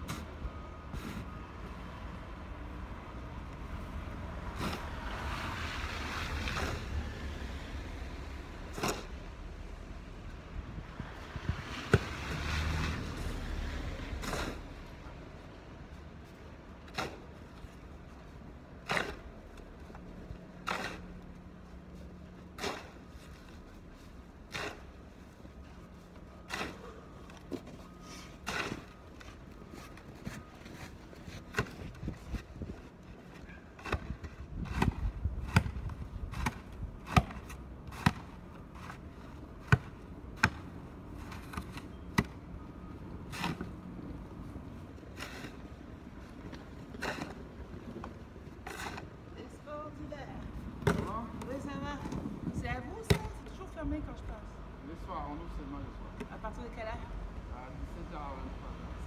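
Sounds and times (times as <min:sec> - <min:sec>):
snow shovel scraping pavement: 0:20.6 - 0:21.3, 0:22.4 - 0:35.7, 0:44.6 - 0:50.1.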